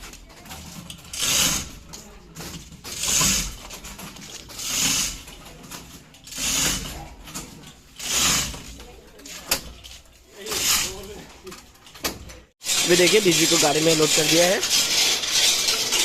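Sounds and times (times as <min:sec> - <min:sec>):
chain rattling through pulley block: 0:12.6 - 0:16.0.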